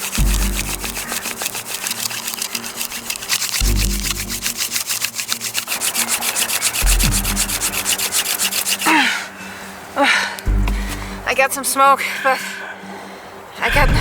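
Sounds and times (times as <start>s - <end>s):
wooden spindle rasping: 0.0s - 9.2s.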